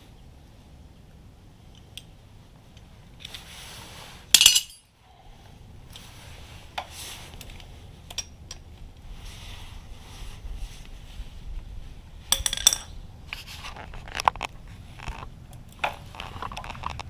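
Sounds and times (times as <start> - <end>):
metal tools clinking: 4.3 - 5.0, 12.3 - 13.0.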